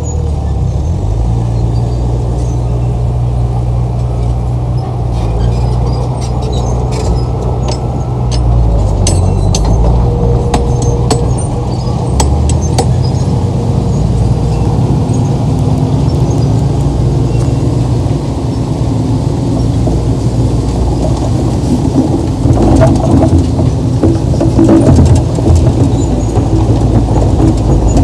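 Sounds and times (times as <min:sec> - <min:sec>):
bulldozer diesel engine rumbling: 0:00.0 - 0:28.0
metallic track clanking: 0:00.9 - 0:28.0
sharp metal clinks: 0:07.7 - 0:09.9.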